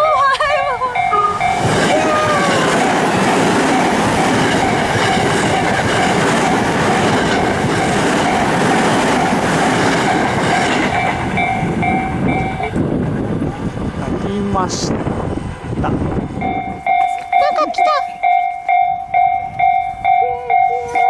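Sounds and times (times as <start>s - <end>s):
crossing warning bell: 0.0s - 12.8s, 15.4s - 21.0s
train wheels clattering: 0.9s - 14.3s.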